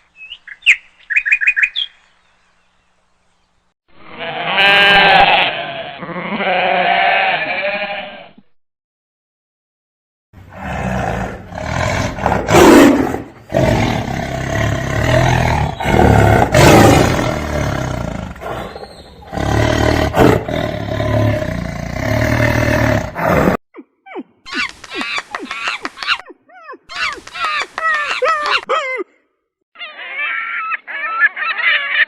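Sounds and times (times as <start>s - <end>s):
big cat roaring: 10.5s - 23.6s.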